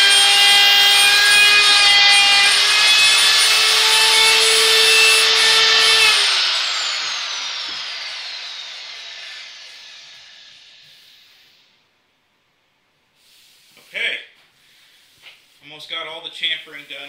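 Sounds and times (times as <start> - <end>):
electric router cutting wood: 0.0 - 11.7
router bit spinning down: 0.0 - 11.7.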